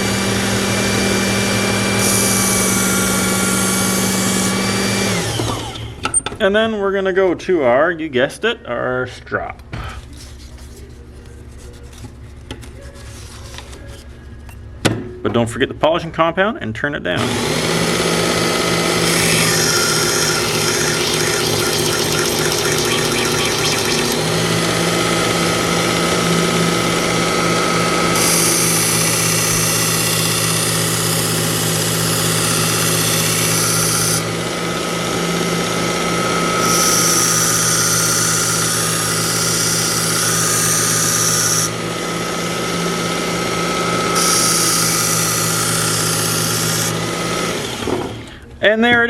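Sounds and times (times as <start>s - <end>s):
belt grinder motor humming: 0.0s - 6.0s, 17.2s - 48.3s.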